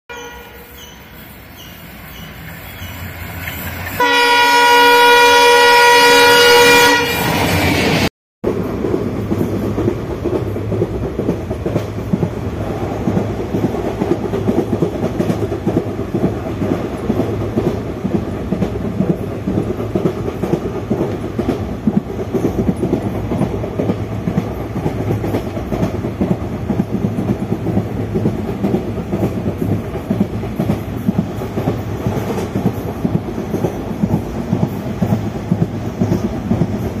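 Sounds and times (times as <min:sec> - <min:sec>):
loud train horn: 0:00.1 - 0:00.9, 0:04.0 - 0:08.1
train wheels clattering on track: 0:01.6 - 0:04.4, 0:07.3 - 0:37.0.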